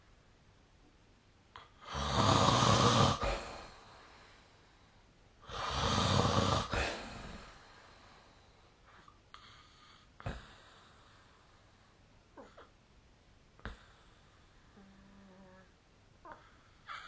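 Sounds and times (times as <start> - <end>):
person snoring: 1.8 - 3.8, 5.4 - 7.6, 14.7 - 15.7
soft breath: 3.2 - 5.2, 6.6 - 12.7, 13.6 - 17.0.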